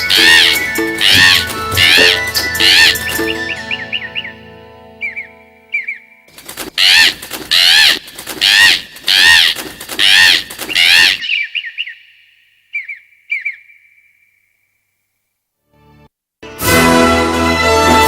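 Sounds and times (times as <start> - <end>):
parrot squawking: 0.0 - 4.4, 5.0 - 6.1, 6.8 - 14.0
parrot chirps: 0.1 - 3.1, 5.0 - 6.1, 6.8 - 14.5.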